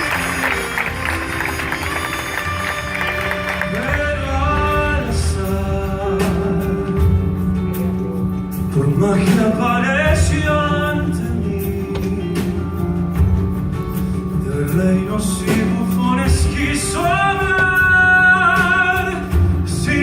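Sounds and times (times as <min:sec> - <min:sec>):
instrumental accompaniment: 0:00.0 - 0:20.0
man singing slow song: 0:03.6 - 0:13.1, 0:14.3 - 0:20.0.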